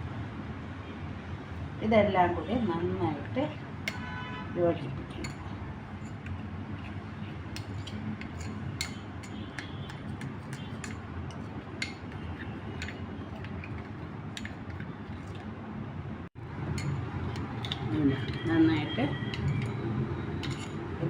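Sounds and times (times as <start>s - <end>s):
spoon clicking against container: 3.9s - 4.1s, 6.1s - 15.5s, 16.7s - 19.8s, 20.4s - 20.8s.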